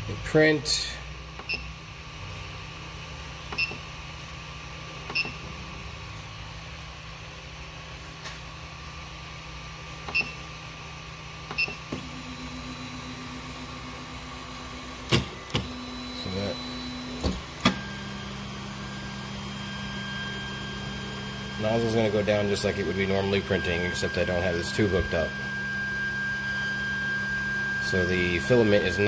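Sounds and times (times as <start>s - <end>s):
printer fans humming: 0.0s - 29.0s
stepper motor whine: 8.6s - 29.0s.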